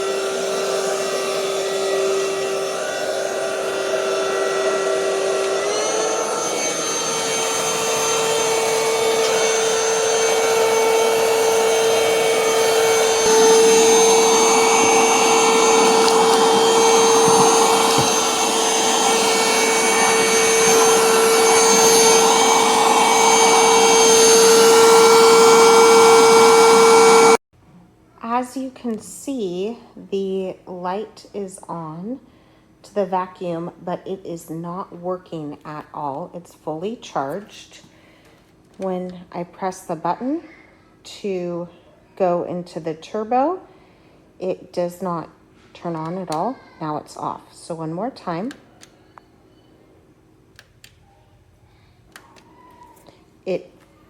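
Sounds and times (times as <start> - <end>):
vacuum cleaner motor whine: 0.0 - 27.4.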